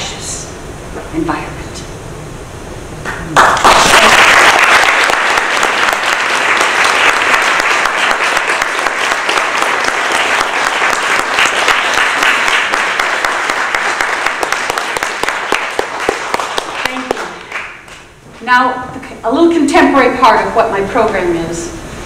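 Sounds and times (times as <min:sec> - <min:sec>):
audience applauding: 0:03.3 - 0:18.0.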